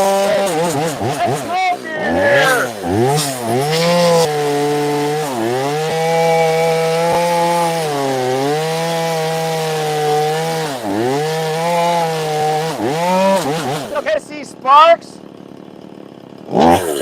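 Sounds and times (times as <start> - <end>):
chainsaw cutting wood: 0.0 - 17.0.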